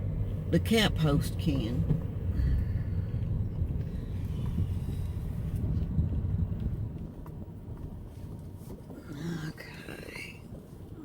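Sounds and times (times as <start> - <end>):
car rumbling: 0.0 - 11.0.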